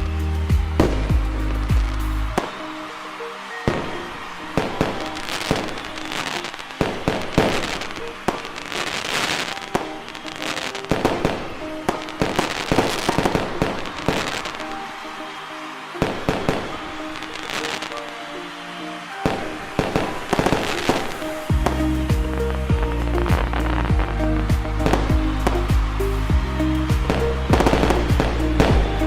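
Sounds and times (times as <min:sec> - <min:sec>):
music playing: 0:00.0 - 0:29.0
fireworks banging and crackling: 0:00.6 - 0:14.8, 0:19.2 - 0:26.3.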